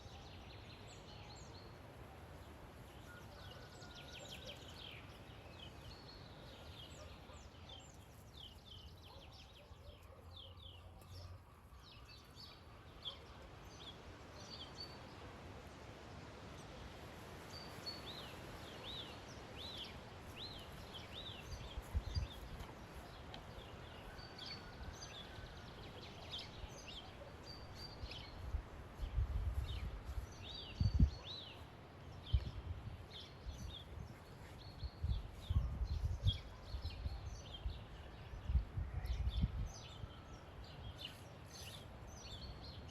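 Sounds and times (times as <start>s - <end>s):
small birds chirping: 4.4s - 15.1s, 17.4s - 38.6s.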